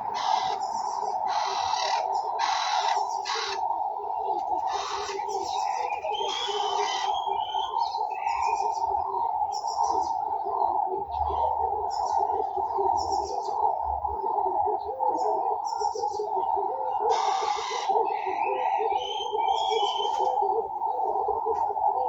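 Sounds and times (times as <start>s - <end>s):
harsh bird call: 0.0s - 3.6s, 4.5s - 8.8s, 17.1s - 20.4s
birds chirping: 0.0s - 22.0s
birds cooing: 0.0s - 22.0s
whistled bird notes: 4.2s - 10.4s, 15.7s - 20.5s.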